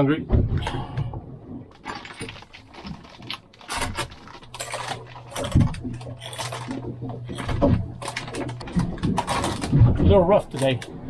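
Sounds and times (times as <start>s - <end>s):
low steady hum: 0.0s - 11.0s
small objects clinking and knocking: 1.7s - 9.8s, 10.4s - 10.9s.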